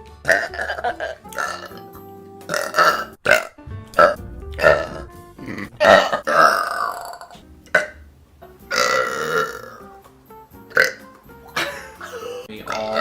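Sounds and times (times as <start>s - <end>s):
faint background music: 0.0s - 13.0s
woman burping: 4.6s - 8.0s, 8.7s - 9.8s, 10.7s - 13.0s.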